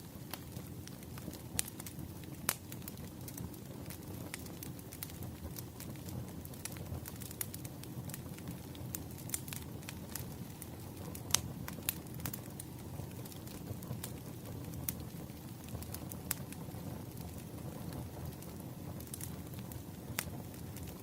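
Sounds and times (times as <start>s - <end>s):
wood fire crackling: 0.0s - 21.0s
sharp pops of burning logs: 0.2s - 21.0s.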